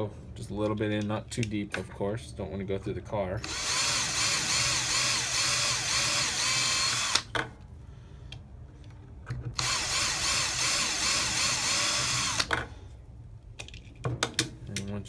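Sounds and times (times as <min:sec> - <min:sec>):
power drill drilling into metal: 0:03.4 - 0:07.3, 0:09.6 - 0:12.5.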